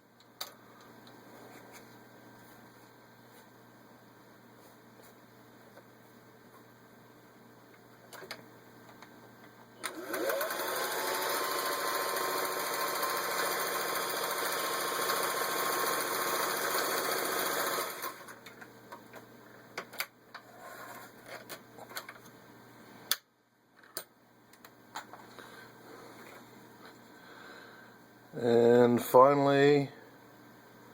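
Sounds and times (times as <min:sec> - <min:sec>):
sewing machine stitching: 0:09.8 - 0:18.4.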